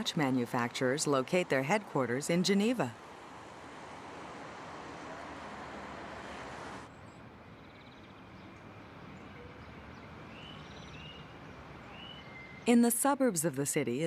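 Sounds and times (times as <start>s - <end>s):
rising bird chirps: 9.3s - 12.7s.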